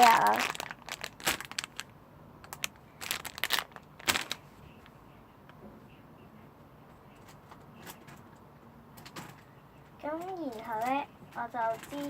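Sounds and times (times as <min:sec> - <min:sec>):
plastic wrapping crinkling: 0:00.0 - 0:04.5, 0:10.3 - 0:12.0.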